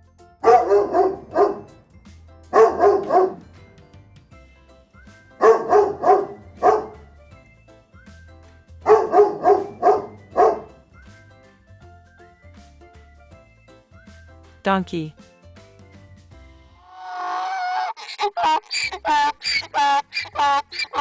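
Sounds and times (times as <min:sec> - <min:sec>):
dog barking: 0:00.4 - 0:01.8, 0:02.5 - 0:03.5, 0:05.4 - 0:07.0, 0:08.8 - 0:10.8.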